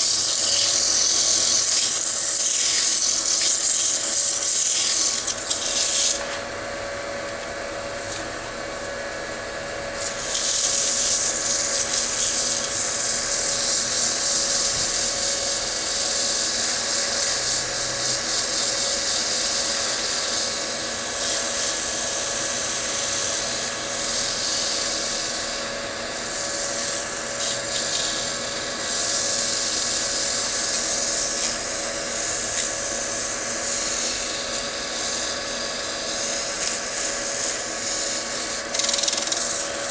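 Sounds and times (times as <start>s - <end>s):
wood lathe hum: 0.0s - 39.9s
sanding hiss on wood: 10.2s - 39.9s.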